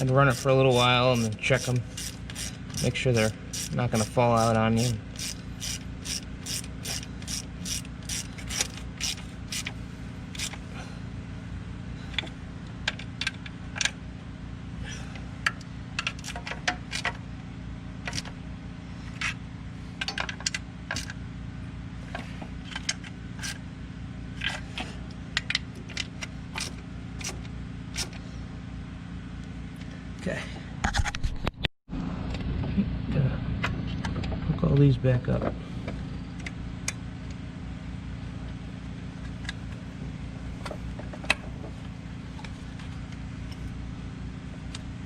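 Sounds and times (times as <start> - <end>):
hand ratchet clicking: 0.0 - 10.6
low steady hum: 0.0 - 31.1.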